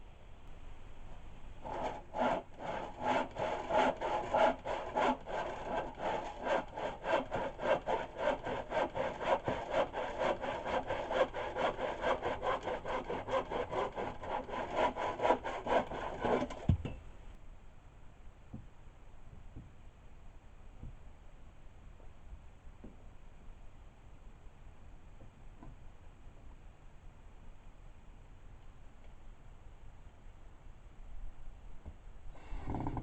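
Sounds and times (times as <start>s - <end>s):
hand saw cutting wood: 1.6s - 16.8s.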